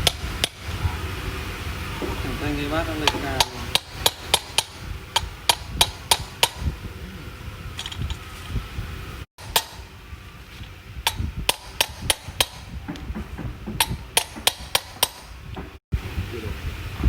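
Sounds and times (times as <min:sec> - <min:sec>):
hammer tapping on metal: 0:03.0 - 0:06.7, 0:09.4 - 0:09.9, 0:11.1 - 0:15.8.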